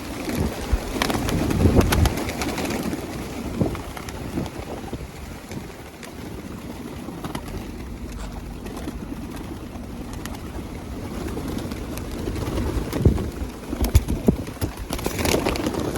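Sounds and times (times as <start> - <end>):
pigeons cooing: 0.0 - 15.9.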